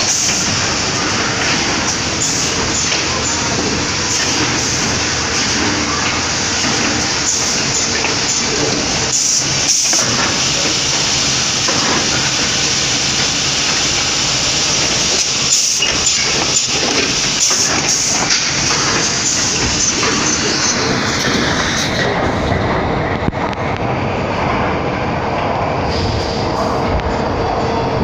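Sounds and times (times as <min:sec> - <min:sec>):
woodworking machine running: 0:00.0 - 0:28.0.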